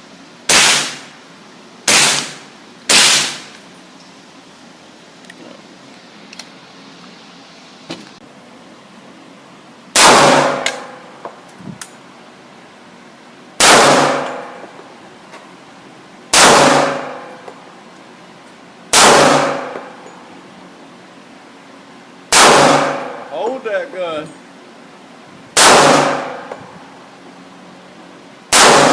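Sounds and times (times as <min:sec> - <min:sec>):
gunshots with echoing decay: 0:00.5 - 0:01.1, 0:01.9 - 0:03.5, 0:10.0 - 0:11.0, 0:13.6 - 0:14.7, 0:16.3 - 0:17.4, 0:18.9 - 0:19.9, 0:22.3 - 0:23.3, 0:25.6 - 0:26.6, 0:28.5 - 0:28.9.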